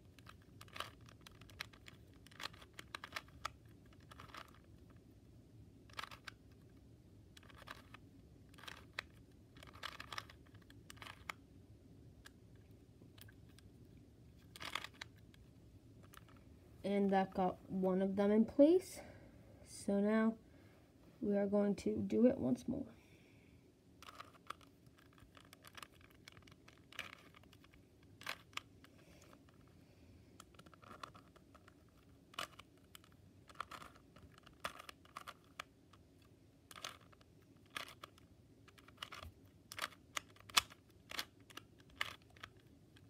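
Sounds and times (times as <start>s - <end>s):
puzzle cube plastic clicks: 0.0s - 5.0s, 5.8s - 11.5s, 12.2s - 13.7s, 14.3s - 16.5s, 24.0s - 29.7s, 30.3s - 43.0s.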